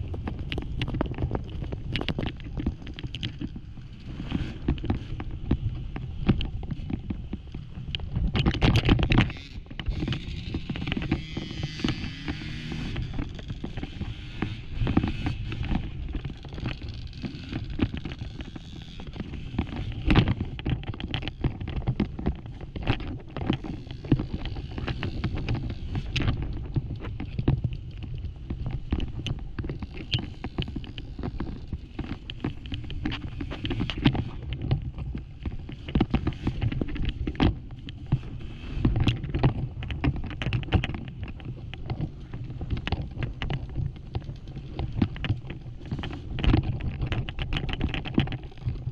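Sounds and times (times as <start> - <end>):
motorcycle engine under load: 0.0 - 38.0
knocks and clatters over rocks: 0.0 - 48.9
wind noise on microphone: 0.0 - 48.9.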